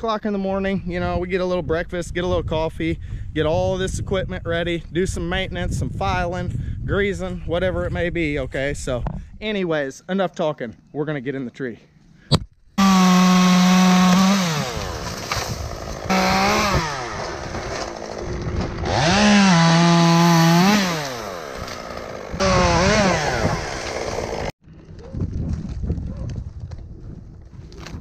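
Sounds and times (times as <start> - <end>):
chainsaw revving: 12.8 - 24.5.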